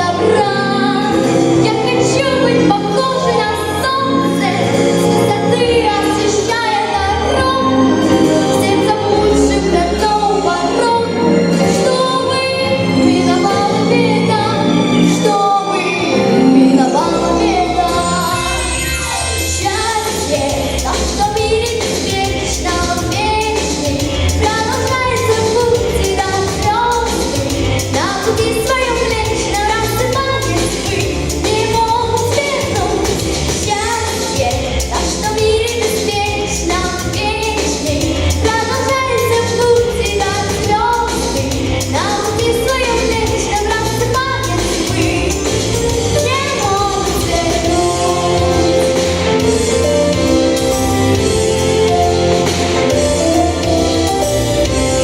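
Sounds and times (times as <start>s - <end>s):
person singing pop song: 0.0s - 55.0s
backing track with bass and beat: 17.2s - 55.0s.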